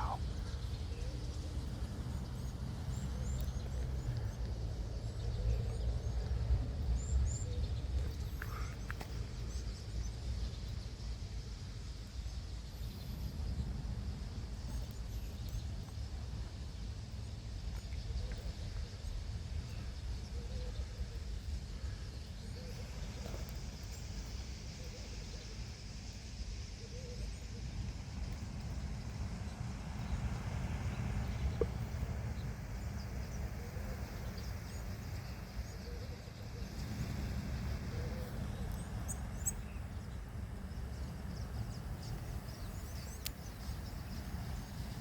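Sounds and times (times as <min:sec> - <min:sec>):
faint high bird chirps: 0:00.0 - 0:01.4, 0:37.9 - 0:40.2.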